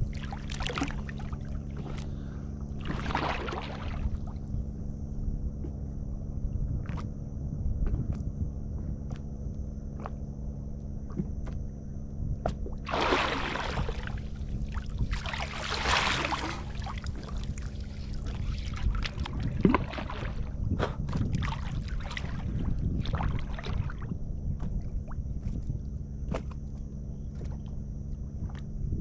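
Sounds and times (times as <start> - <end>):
water splashing: 0.0 - 2.2, 2.8 - 4.4, 12.8 - 20.6, 21.3 - 24.1
boat engine humming: 0.0 - 29.0.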